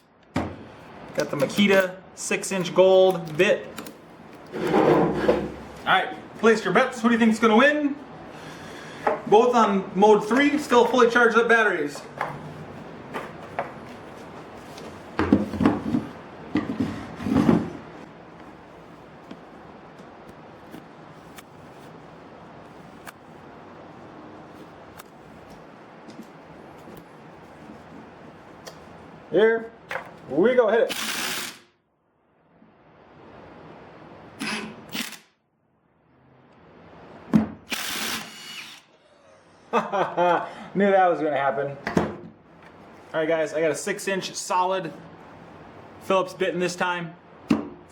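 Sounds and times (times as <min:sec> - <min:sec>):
tool clunks and knocks: 0:00.3 - 0:00.6, 0:15.2 - 0:17.8, 0:41.8 - 0:42.4.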